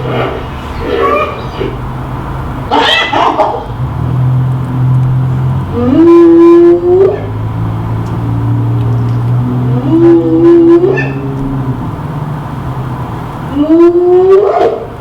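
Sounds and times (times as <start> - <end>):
animal calls bending upward: 0.0 - 1.8, 2.7 - 3.8, 5.7 - 7.4, 9.6 - 11.9, 13.5 - 15.0
steady low hum: 0.0 - 15.0.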